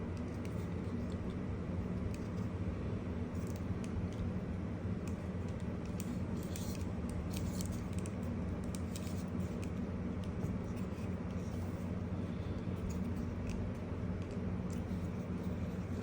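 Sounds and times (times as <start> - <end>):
steady low hum: 0.0 - 16.0
toy packaging clicks and scrapes: 5.1 - 16.0.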